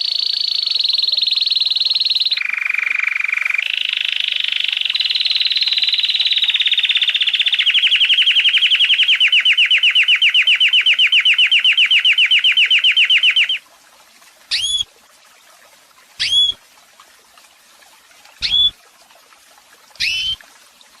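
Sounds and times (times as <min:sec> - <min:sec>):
canary singing a fast trill: 0:05.1 - 0:13.6, 0:14.5 - 0:14.8, 0:16.2 - 0:16.6, 0:18.4 - 0:18.7, 0:20.0 - 0:20.4
short bird chirps: 0:10.4 - 0:13.6, 0:14.5 - 0:14.8, 0:16.2 - 0:16.6, 0:18.4 - 0:18.8, 0:20.0 - 0:20.4.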